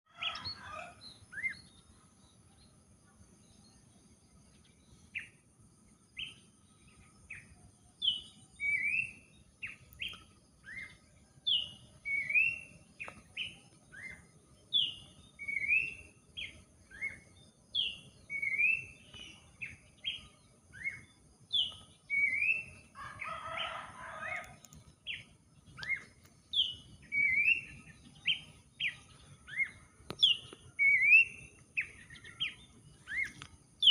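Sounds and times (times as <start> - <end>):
bird whistled song: 0.2 - 1.8, 7.3 - 22.9, 25.1 - 33.9.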